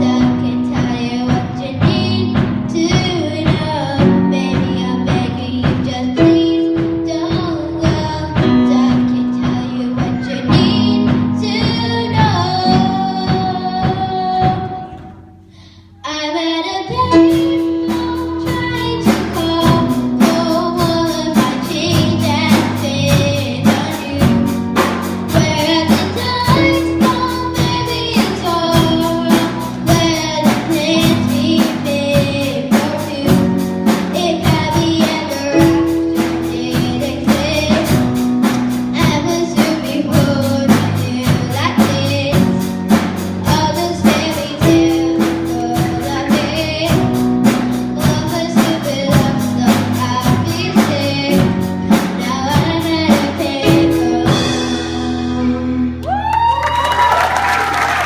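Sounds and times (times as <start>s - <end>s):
person singing: 0.0s - 15.2s, 15.9s - 38.2s, 43.4s - 57.1s
bass guitar: 0.0s - 16.0s, 16.8s - 58.0s
piano: 0.0s - 58.0s
steady drum beat: 17.1s - 55.1s.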